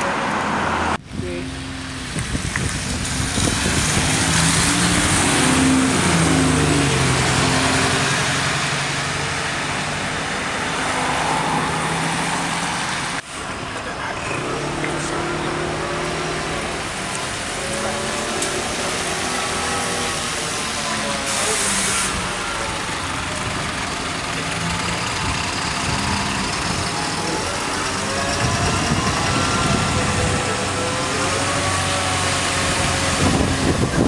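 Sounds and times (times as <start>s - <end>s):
traffic noise: 0.0s - 34.0s
large vehicle engine running: 20.1s - 34.0s.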